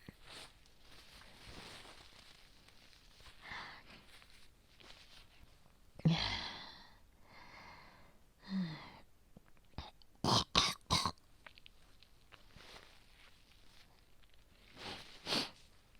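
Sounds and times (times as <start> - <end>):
breath: 3.4 - 4.0, 6.4 - 9.0.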